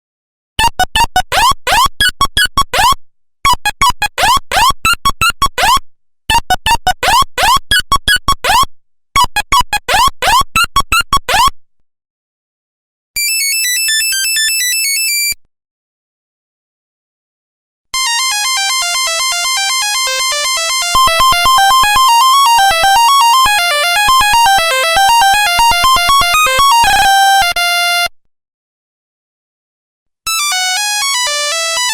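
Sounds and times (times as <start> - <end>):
buzzy stepping ringtone beeps: 0.6 - 11.5, 20.0 - 28.1.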